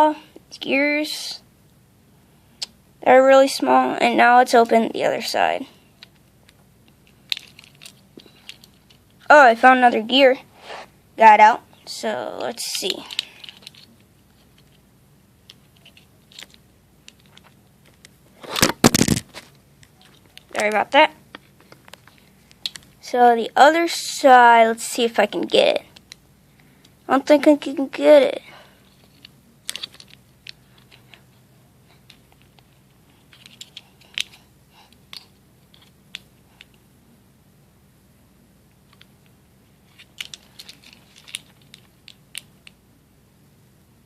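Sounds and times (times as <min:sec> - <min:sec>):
faint plastic parts clicking: 0:06.0 - 0:09.3, 0:12.8 - 0:14.8, 0:15.4 - 0:23.0, 0:25.9 - 0:27.6, 0:28.9 - 0:36.8, 0:38.8 - 0:42.8
plastic casing cracking and crunching: 0:18.6 - 0:19.5
fidget cube plastic clicks: 0:29.1 - 0:31.2, 0:33.3 - 0:34.4, 0:39.9 - 0:42.8.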